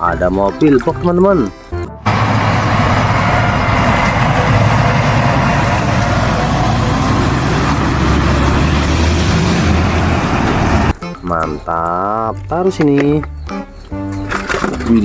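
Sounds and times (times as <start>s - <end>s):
engine-like hum and hiss: 2.0s - 10.9s.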